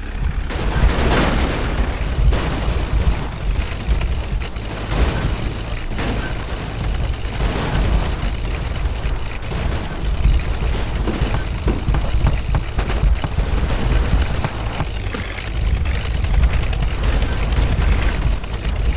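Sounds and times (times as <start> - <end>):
diesel engine rumbling: 0.0 - 18.9.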